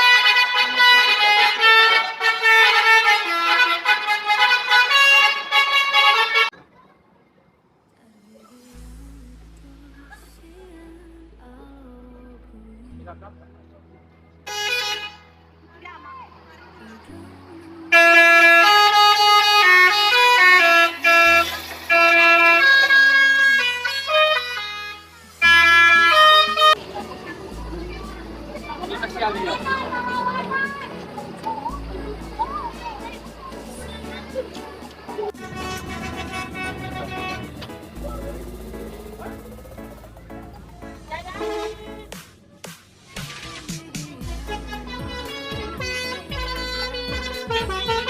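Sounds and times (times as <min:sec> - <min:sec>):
bus horns playing a tune: 0:00.0 - 0:06.5, 0:14.5 - 0:15.4, 0:17.9 - 0:30.9, 0:35.3 - 0:39.6, 0:41.0 - 0:42.2, 0:44.2 - 0:48.0.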